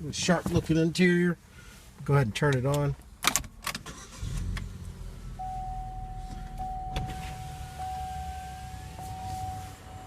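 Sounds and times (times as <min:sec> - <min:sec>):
car engine idling: 0:03.5 - 0:10.0.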